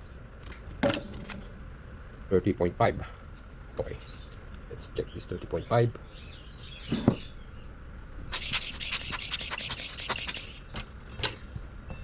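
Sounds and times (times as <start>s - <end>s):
caliper jaw scraping: 8.3s - 10.6s.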